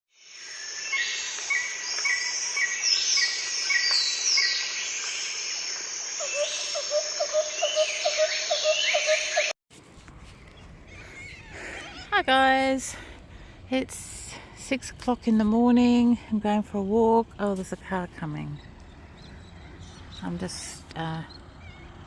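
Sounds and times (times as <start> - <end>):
lower bird chirps: 0.4 - 9.5
birds chirping and calling: 6.2 - 9.5, 10.4 - 12.1.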